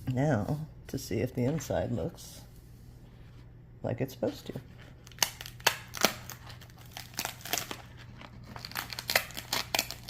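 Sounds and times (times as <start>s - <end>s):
dry loofah skin cracking: 5.0s - 10.0s.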